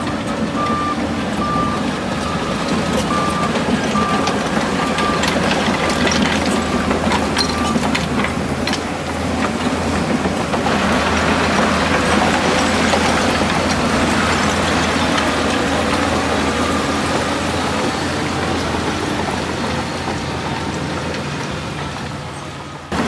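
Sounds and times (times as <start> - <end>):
reversing alarm beeping: 0.0 - 8.1, 11.8 - 18.9
clanks and knocks: 0.0 - 17.6
diesel engine running: 0.0 - 23.0.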